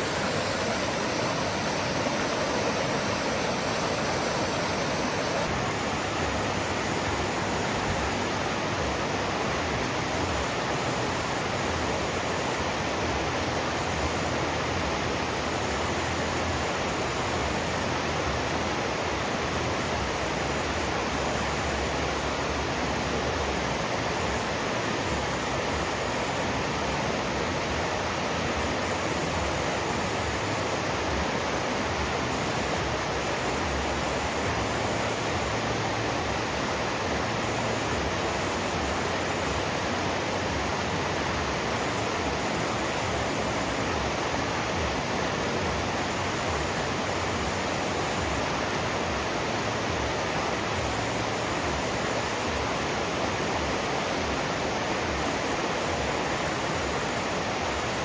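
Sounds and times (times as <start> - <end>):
river water rushing: 0.0 - 58.0.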